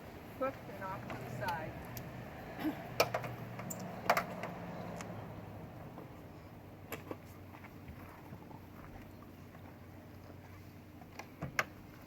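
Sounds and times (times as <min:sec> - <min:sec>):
strap hooks and buckles clinking: 0:01.1 - 0:05.2.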